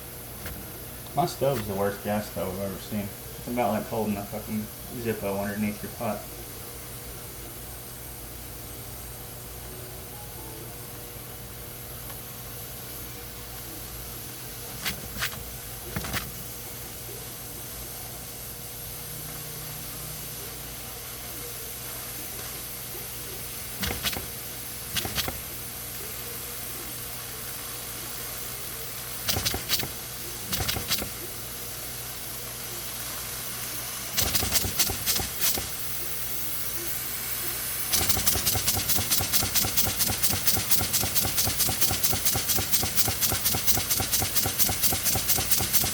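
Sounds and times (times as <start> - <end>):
steady steam hiss: 0.0 - 9.6, 12.2 - 45.9
small steam engine chuffing: 29.2 - 31.3, 34.2 - 36.0, 37.5 - 45.9.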